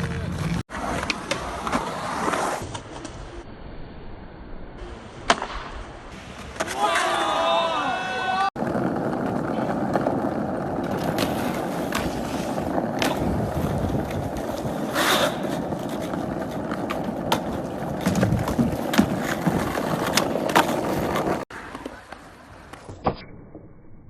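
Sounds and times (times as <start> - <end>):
skateboard scrape: 0.0 - 3.4, 4.9 - 23.3
skateboard wheels rolling on pavement: 0.0 - 3.4, 4.8 - 23.1
skateboard clacks: 8.6 - 23.1.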